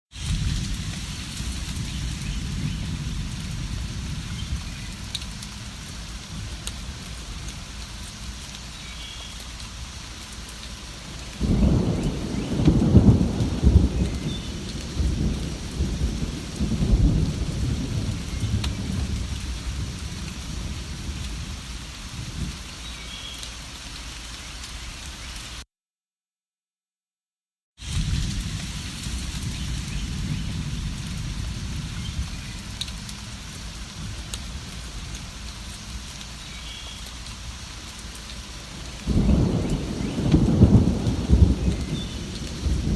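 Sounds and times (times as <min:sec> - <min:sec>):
thunder rumbling: 0:00.1 - 0:07.9, 0:11.1 - 0:22.6, 0:27.8 - 0:36.1, 0:38.7 - 0:42.9
steady rain falling: 0:00.1 - 0:25.6, 0:27.8 - 0:42.9.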